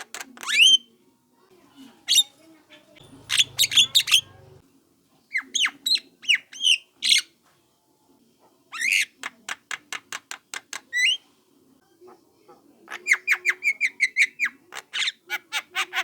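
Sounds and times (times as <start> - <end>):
myna squawking calls: 3.0 - 4.6.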